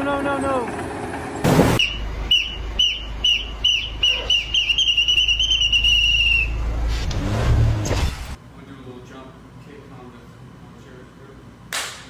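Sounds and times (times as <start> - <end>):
low engine rumble: 0.5 - 7.2.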